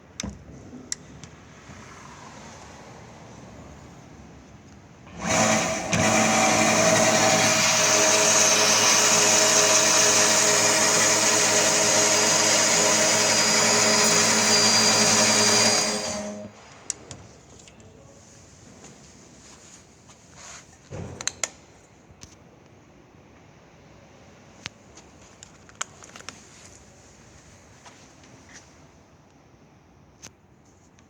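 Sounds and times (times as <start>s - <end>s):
band saw running: 5.1s - 16.5s.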